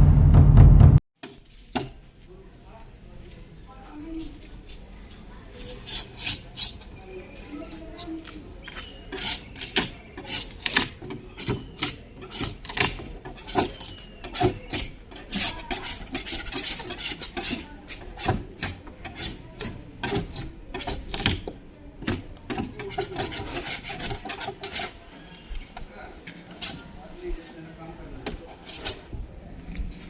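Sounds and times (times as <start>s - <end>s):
abrasive strokes rasping: 22.6s - 25.5s.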